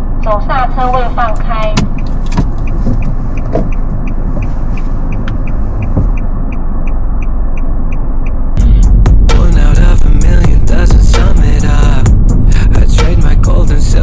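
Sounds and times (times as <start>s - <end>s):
car warning chime beeping: 0.0s - 8.6s
car cabin hum: 0.0s - 14.0s.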